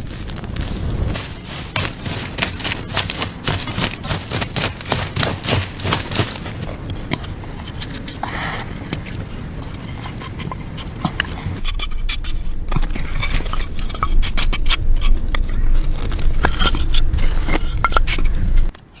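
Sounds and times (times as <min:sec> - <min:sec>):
low rumble: 0:00.0 - 0:04.0, 0:09.4 - 0:18.7.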